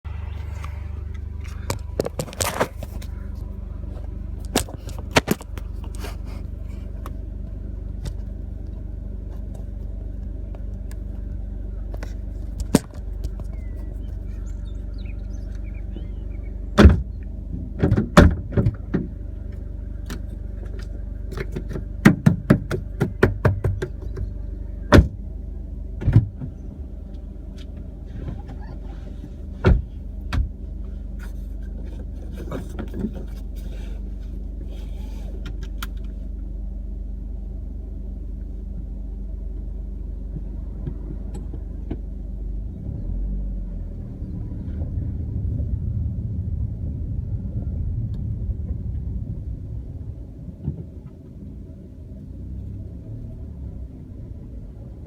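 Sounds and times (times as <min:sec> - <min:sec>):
low rumble: 0:00.0 - 0:55.0
car suspension clonking: 0:00.1 - 0:25.3.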